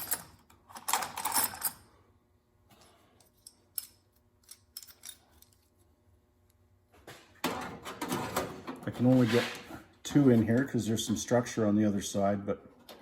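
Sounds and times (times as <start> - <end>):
metal clinks and clicks: 3.2 - 5.7.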